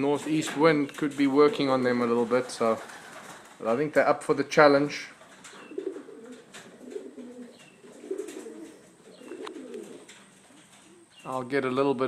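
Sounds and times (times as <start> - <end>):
pigeons cooing: 0.0 - 3.6, 5.0 - 11.4.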